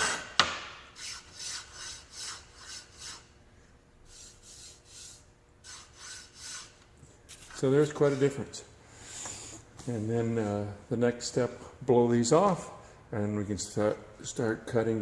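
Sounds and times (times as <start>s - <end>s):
sandpaper rubbing on wood: 1.0s - 3.3s, 4.1s - 6.8s.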